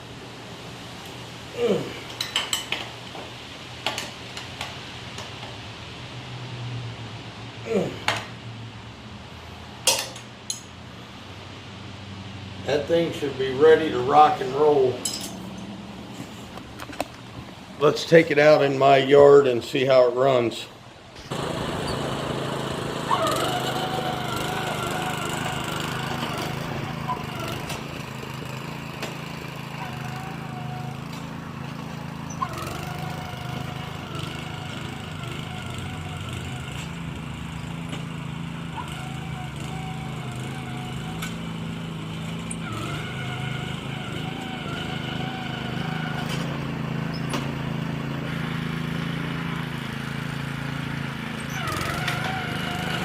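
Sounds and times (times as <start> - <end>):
metal tools clinking: 15.0 - 15.8
small gasoline engine running: 21.2 - 53.0.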